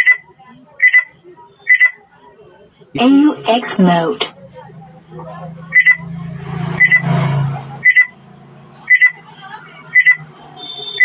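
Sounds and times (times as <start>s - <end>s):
speaker short high beeps: 6.8s - 7.1s.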